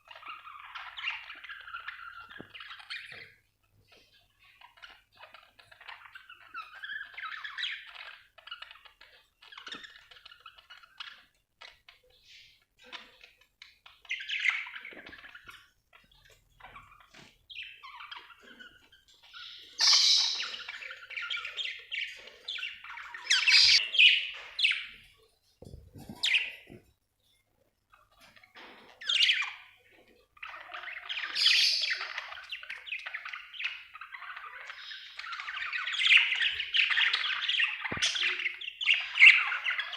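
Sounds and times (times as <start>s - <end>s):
budgerigars chirping and warbling: 0.0s - 25.3s, 26.0s - 39.9s
squawky bird calls: 19.3s - 24.9s.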